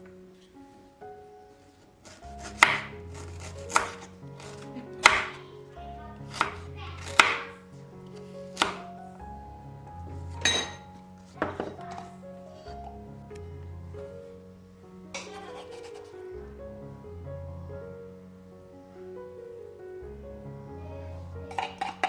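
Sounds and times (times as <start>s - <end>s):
soft background music: 0.0s - 22.0s
knife chopping on cutting board: 2.0s - 5.4s, 6.3s - 7.5s, 8.2s - 8.9s.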